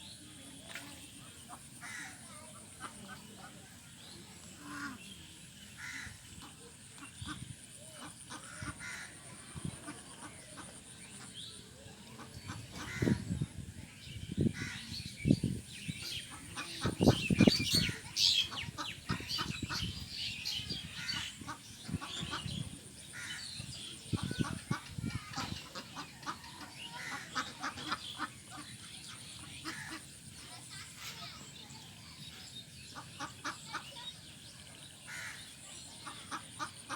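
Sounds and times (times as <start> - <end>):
ducks quacking: 4.4 - 5.1, 5.8 - 11.3, 12.2 - 13.4, 16.0 - 31.4, 33.0 - 34.0, 36.0 - 36.9.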